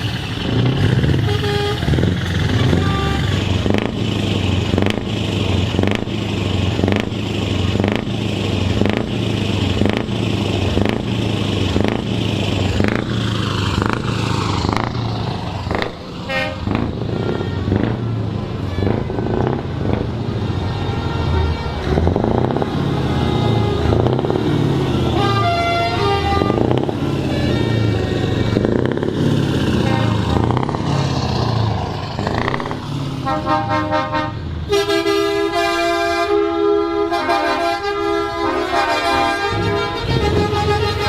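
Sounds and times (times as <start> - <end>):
truck engines running: 0.0 - 41.0
truck air horns: 1.0 - 3.9, 15.7 - 28.6, 29.7 - 30.6, 33.1 - 41.0.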